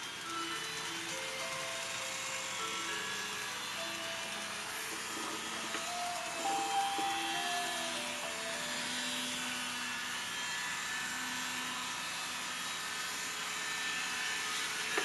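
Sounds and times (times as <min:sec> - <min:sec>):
train sound effects: 0:00.2 - 0:09.3.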